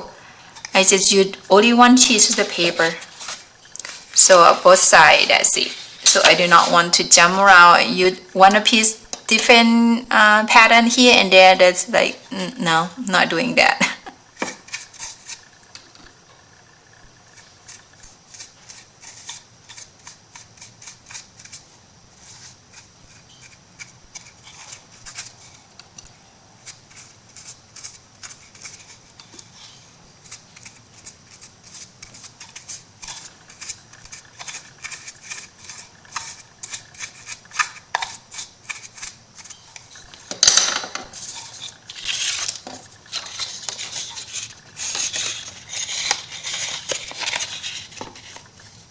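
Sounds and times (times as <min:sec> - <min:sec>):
paper rustling: 0:02.2 - 0:04.8, 0:26.7 - 0:48.9.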